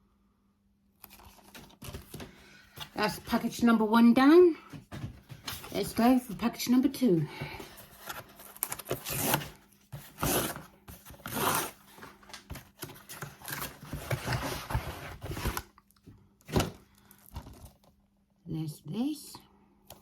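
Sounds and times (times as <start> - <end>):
packaging crinkling and rustling: 1.0 - 3.6, 7.3 - 17.9
package tearing: 8.0 - 14.7.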